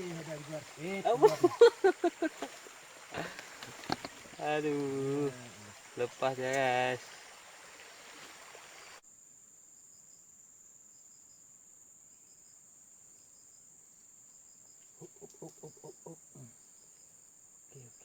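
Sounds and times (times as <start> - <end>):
rushing water hiss: 0.0 - 9.0
crickets droning: 0.0 - 18.0.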